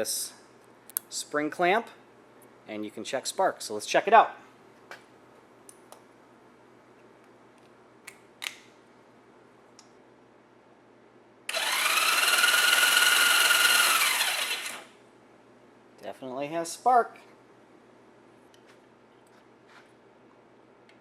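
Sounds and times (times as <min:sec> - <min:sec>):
starter motor cranking engine: 0:11.5 - 0:14.9.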